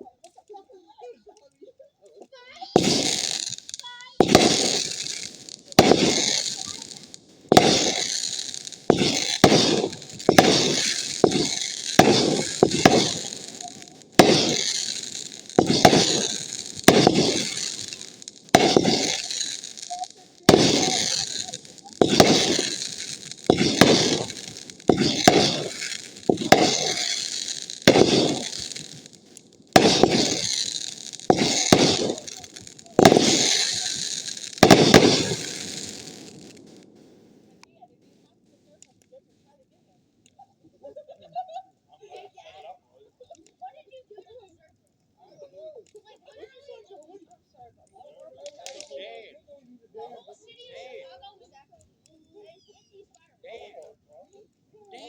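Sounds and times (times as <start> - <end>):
fireworks crackling sizzle: 2.2 - 39.5, 47.8 - 49.2, 53.8 - 55.0
fireworks bangs: 2.7 - 37.6, 48.5 - 48.9.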